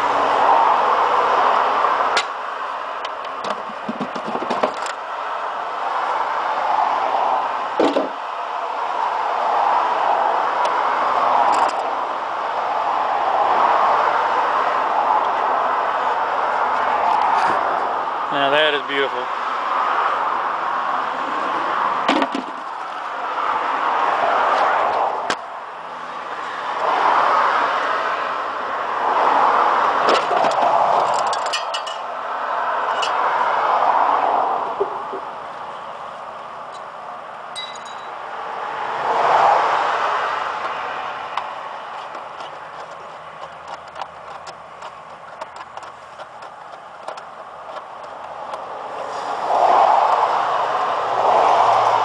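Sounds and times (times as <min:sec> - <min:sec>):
steady rushing noise: 0:00.0 - 0:52.0.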